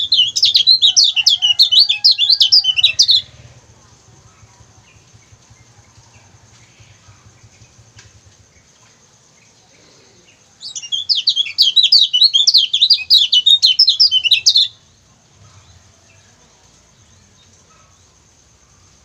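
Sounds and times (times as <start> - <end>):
bird singing high sharp chirps: 0.0 - 3.4, 10.6 - 14.8
faint low hum: 0.0 - 11.8.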